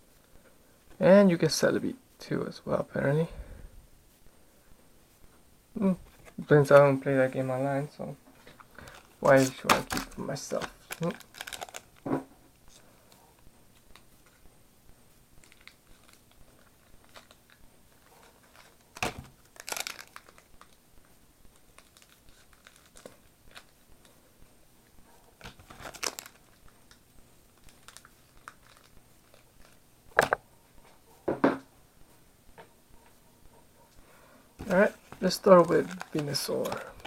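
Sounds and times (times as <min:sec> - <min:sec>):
card packaging crinkling and rustling: 0:08.4 - 0:12.1, 0:15.4 - 0:20.8, 0:21.5 - 0:24.2, 0:25.3 - 0:30.4, 0:34.6 - 0:37.0.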